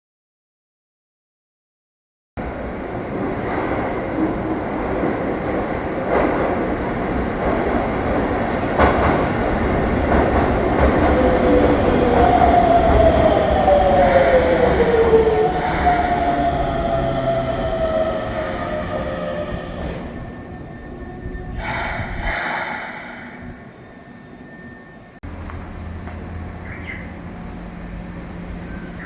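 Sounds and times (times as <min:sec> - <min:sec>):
rail clacks: 0:06.0 - 0:20.4
electric train running: 0:06.0 - 0:25.2.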